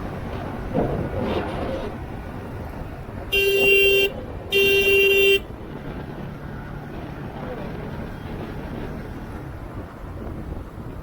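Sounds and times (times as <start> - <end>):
motorcycle engine and road noise: 0.0 - 11.0
vehicle horn honking: 3.3 - 5.5.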